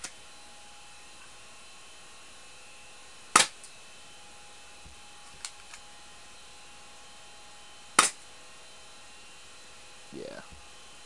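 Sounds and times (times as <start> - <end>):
airsoft pistol shot: 3.4 - 3.6, 8.0 - 8.2.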